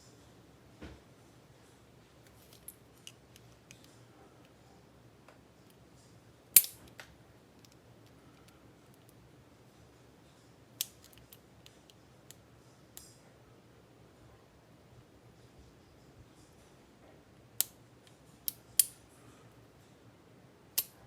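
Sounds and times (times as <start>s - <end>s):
hand tools clicking on metal lock: 20.8s - 21.0s.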